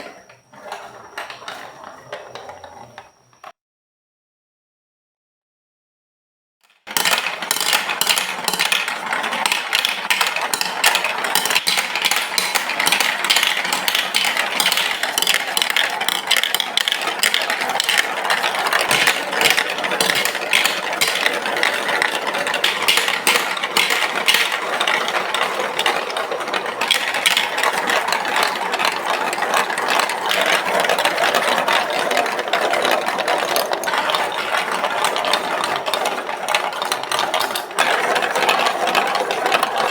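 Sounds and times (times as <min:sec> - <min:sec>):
marbles rattling down plastic track: 0:00.0 - 0:03.4, 0:06.6 - 0:39.9.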